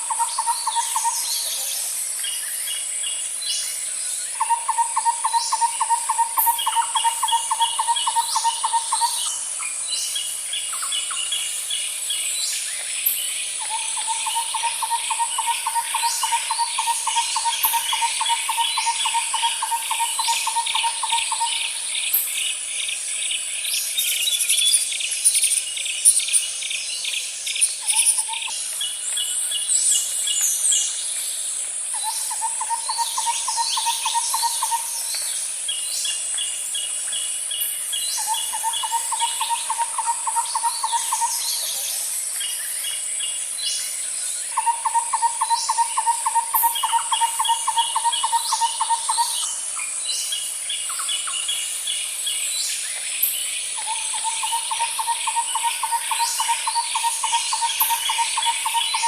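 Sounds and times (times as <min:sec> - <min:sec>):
high insect drone: 0:00.0 - 0:59.0
bird chirps and calls: 0:31.9 - 0:35.3, 0:38.0 - 0:43.3, 0:44.5 - 0:51.6, 0:52.4 - 0:59.0.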